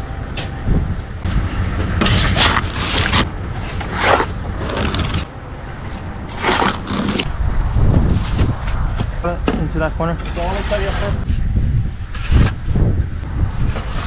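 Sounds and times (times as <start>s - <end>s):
engine running low: 0.0s - 10.5s
tools raking loose asphalt: 2.0s - 5.3s, 6.3s - 7.3s, 10.2s - 11.2s.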